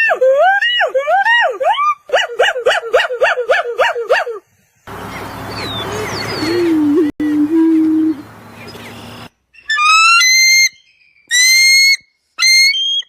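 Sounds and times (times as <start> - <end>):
low steady hoot: 5.8 - 8.5
whistled animal call sliding: 7.6 - 13.0.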